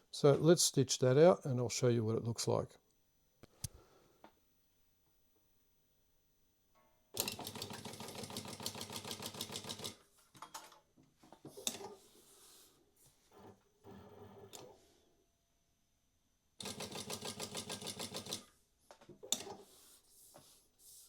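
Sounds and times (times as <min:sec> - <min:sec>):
sewing machine stitching: 0:07.2 - 0:10.0, 0:16.6 - 0:18.5, 0:19.2 - 0:19.7
sewing machine whine: 0:07.2 - 0:10.0, 0:13.3 - 0:14.9, 0:16.6 - 0:18.5.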